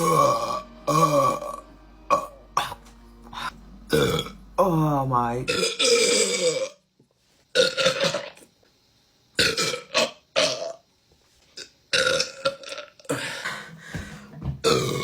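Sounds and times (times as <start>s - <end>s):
woman belching: 0.0s - 4.4s, 5.5s - 6.8s, 9.4s - 10.8s, 14.6s - 15.0s.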